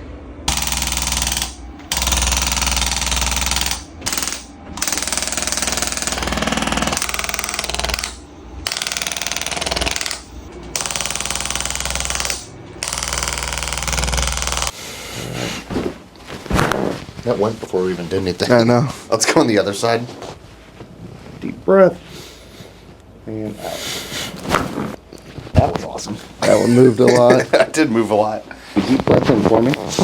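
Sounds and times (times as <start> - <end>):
massage gun hammering: 0.5 - 14.8.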